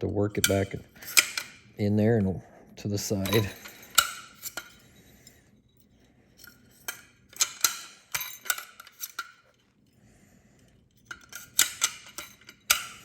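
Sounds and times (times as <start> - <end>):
wrench clinking against metal nut: 0.3 - 1.6, 3.1 - 9.7, 10.9 - 13.0.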